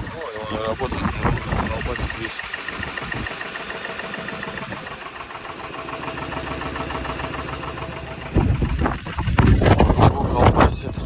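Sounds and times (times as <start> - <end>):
engine idling roughly with knock: 0.0 - 11.0.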